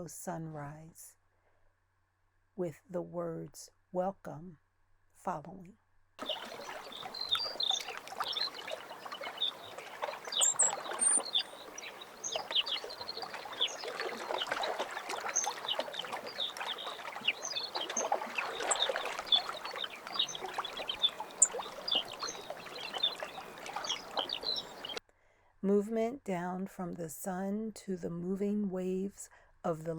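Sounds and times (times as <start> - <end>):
birds chirping: 6.2 - 25.0
lake waves lapping softly: 6.2 - 25.0.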